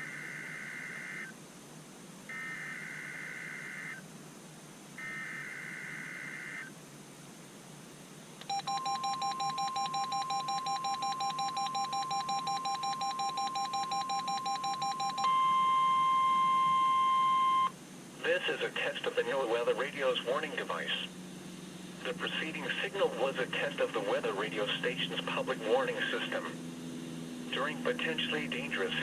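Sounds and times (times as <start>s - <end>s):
rapidly pulsing electronic beep: 8.5s - 17.8s
steady warning alarm tone: 8.5s - 17.8s
warbling data tone bursts: 8.5s - 17.8s.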